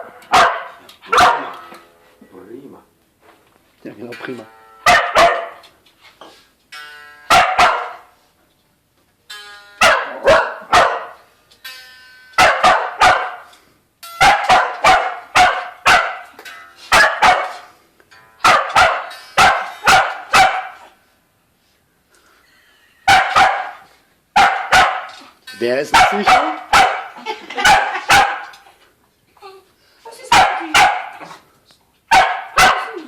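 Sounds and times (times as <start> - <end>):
dog barking: 0.0 - 1.6, 4.9 - 5.6, 7.3 - 8.1, 9.8 - 11.2, 12.4 - 13.5, 14.2 - 16.3, 16.9 - 17.7, 18.4 - 21.0, 23.1 - 25.2, 25.9 - 28.6, 30.3 - 31.4, 32.1 - 33.0
ringing guitar notes: 1.4 - 2.4, 4.1 - 5.0, 6.7 - 8.3, 9.2 - 10.7, 11.3 - 12.4, 14.0 - 14.5, 19.0 - 19.9, 25.1 - 25.9.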